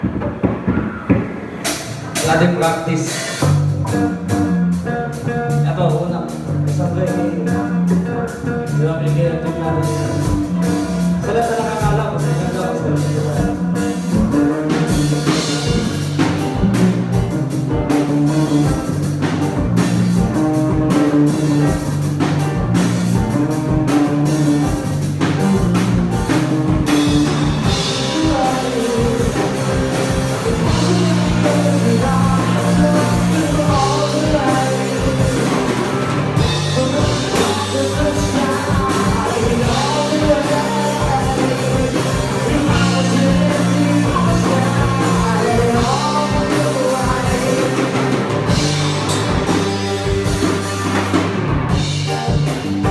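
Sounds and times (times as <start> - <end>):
rock song: 0.0 - 52.9.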